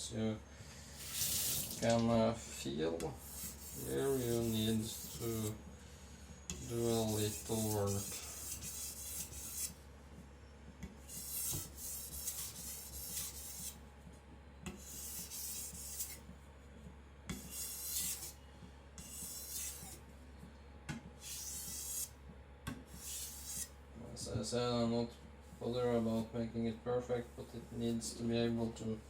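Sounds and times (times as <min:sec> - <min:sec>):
blade rasping on whetstone: 0:01.0 - 0:01.7, 0:03.2 - 0:05.6, 0:06.5 - 0:09.8, 0:11.1 - 0:13.8, 0:14.8 - 0:16.2, 0:17.3 - 0:18.4, 0:19.0 - 0:20.0, 0:21.2 - 0:22.1, 0:23.0 - 0:23.7.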